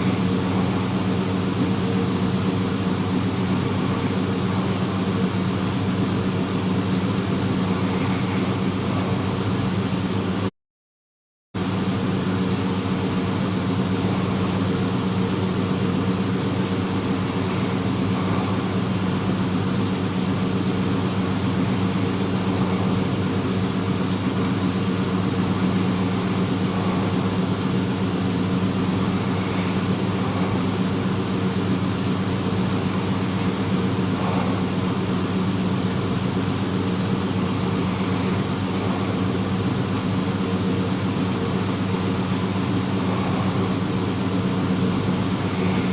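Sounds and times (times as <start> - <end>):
steady mechanical hum: 0.0 - 10.5, 11.6 - 45.9
even hiss: 13.2 - 45.9.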